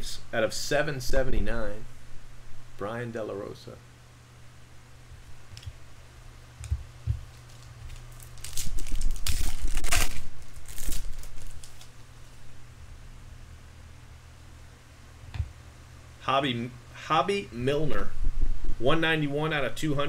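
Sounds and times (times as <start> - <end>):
wrapper crinkling and tearing: 7.2 - 12.1.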